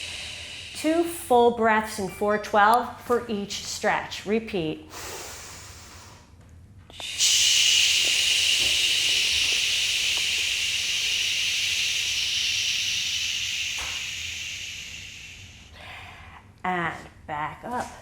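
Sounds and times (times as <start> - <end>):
person breathing into microphone: 7.0 - 16.4.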